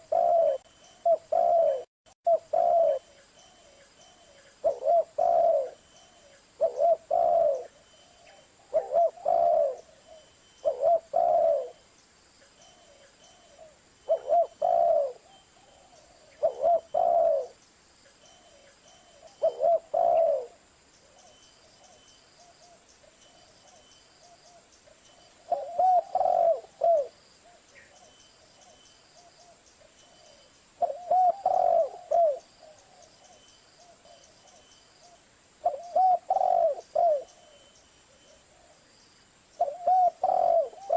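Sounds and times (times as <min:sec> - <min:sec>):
dove cooing: 0:00.0 - 0:11.8, 0:12.7 - 0:17.6, 0:18.3 - 0:22.8, 0:23.6 - 0:38.8, 0:39.6 - 0:40.9.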